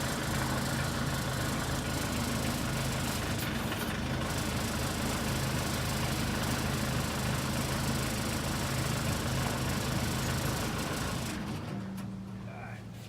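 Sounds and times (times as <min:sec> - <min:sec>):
backhoe engine running: 0:00.0 - 0:13.0.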